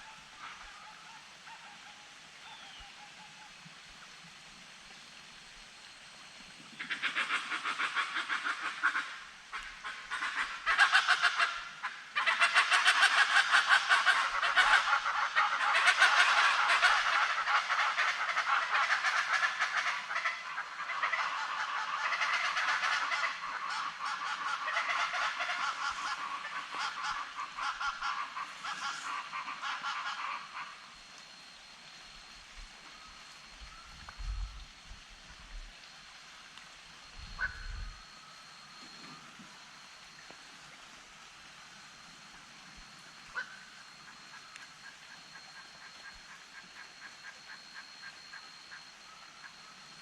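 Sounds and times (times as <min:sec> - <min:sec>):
flock of birds calling: 0:06.7 - 0:34.7, 0:37.1 - 0:41.0, 0:42.1 - 0:50.0.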